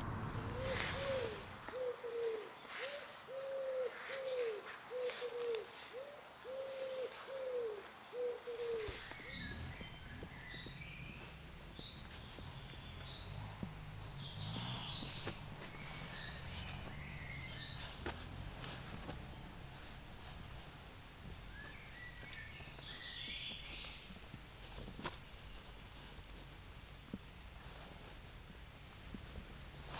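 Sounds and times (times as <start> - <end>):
bird hooting: 0.4 - 9.8
small bird chirping: 8.6 - 19.1, 21.4 - 24.2.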